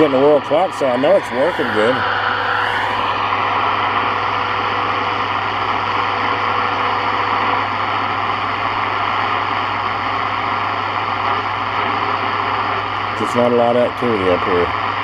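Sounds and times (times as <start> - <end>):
faint steady whistle: 0.0 - 5.3
low hum: 0.0 - 7.0
radio static hiss: 0.0 - 7.6.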